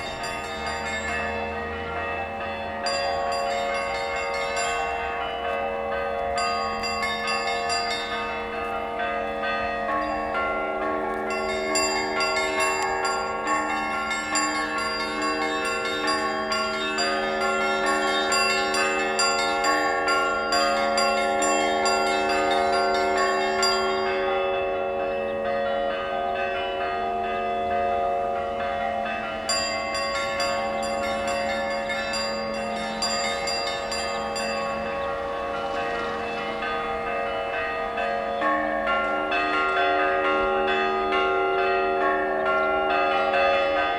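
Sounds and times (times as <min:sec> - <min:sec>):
church bells ringing: 0:00.0 - 0:43.9.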